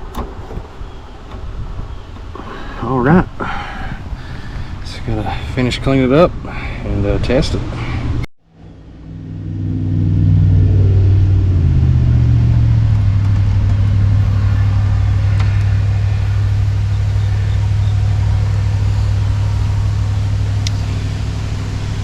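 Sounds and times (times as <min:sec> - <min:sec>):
heat pump humming: 0:08.5 - 0:22.0.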